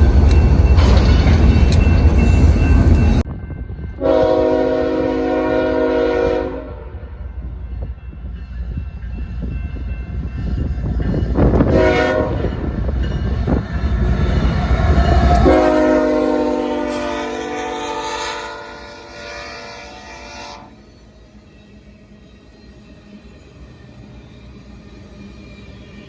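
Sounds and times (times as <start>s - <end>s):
train rumbling past: 0.0s - 26.0s
locomotive air horn: 4.0s - 7.2s, 11.6s - 12.5s, 15.3s - 20.8s.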